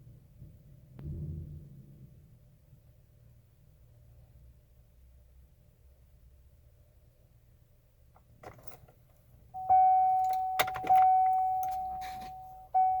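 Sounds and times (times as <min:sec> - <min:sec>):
keys jangling and clicking: 0:08.4 - 0:09.0, 0:10.1 - 0:12.4
bright chime tone: 0:09.6 - 0:13.0.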